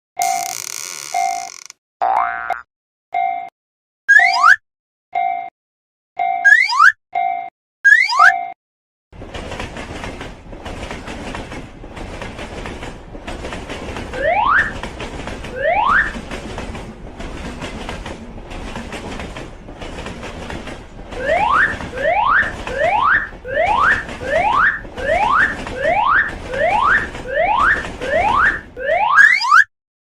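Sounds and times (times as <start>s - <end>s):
train passing rumble: 9.2s - 28.8s.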